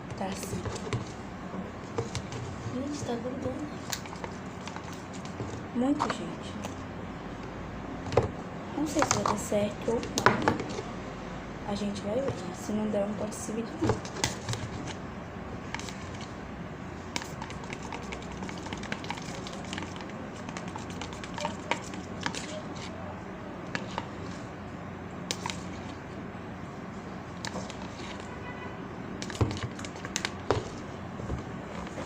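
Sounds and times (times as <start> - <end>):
sticky slime being mixed: 0.0 - 6.8, 8.1 - 10.9, 11.8 - 15.0, 15.6 - 26.2, 27.0 - 32.0.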